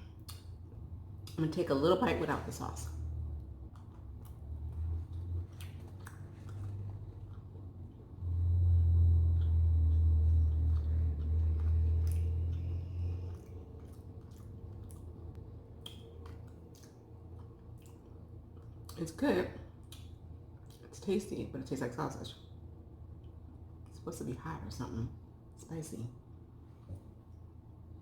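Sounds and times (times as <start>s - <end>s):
loud low rumble: 1.9s - 15.6s
chewing sausage: 2.8s - 21.0s.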